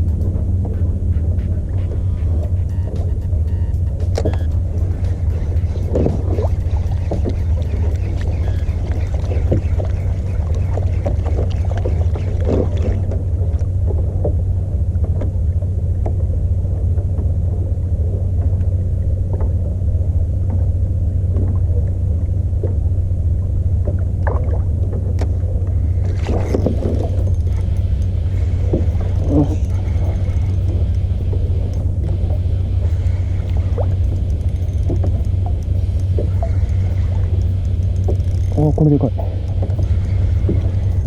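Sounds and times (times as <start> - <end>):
rush of noise: 0.0 - 15.0, 25.3 - 41.0
outboard motor droning: 0.0 - 41.0.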